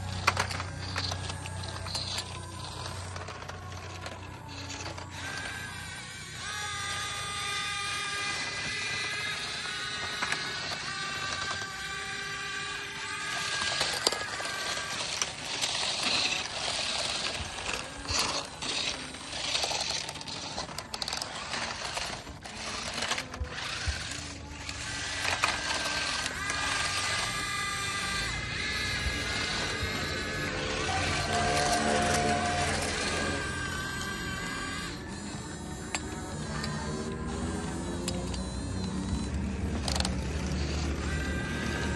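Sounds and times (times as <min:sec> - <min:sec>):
small motors whirring: 0:00.0 - 0:41.9
steady humming tones: 0:00.0 - 0:41.9
toy excavator clattering: 0:00.0 - 0:41.9.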